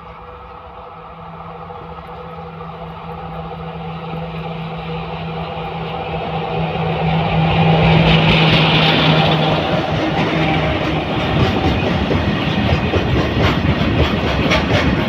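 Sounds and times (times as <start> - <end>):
rushing hiss of train: 0.0 - 15.0
train locomotive humming: 0.0 - 15.0.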